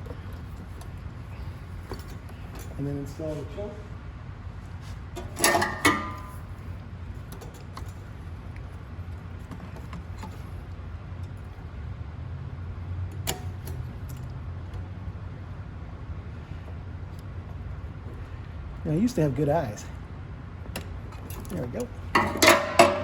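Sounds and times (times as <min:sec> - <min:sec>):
steady low hum: 0:00.0 - 0:23.0
metal parts clinking: 0:05.2 - 0:06.5, 0:21.1 - 0:23.0.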